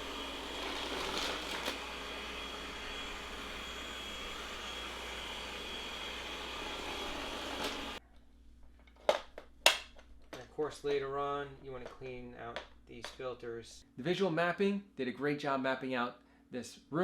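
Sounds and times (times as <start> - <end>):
robot vacuum running: 0.0 - 8.0.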